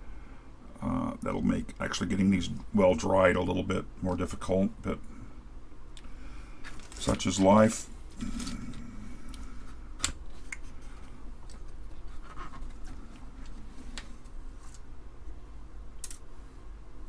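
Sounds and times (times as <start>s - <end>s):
scratchy handling noise: 10.2s - 14.8s.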